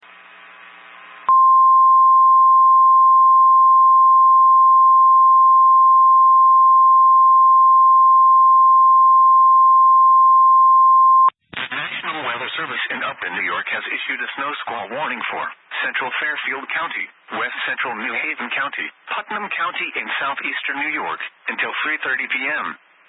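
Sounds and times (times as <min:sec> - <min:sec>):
steady warning beep: 0:01.3 - 0:11.3.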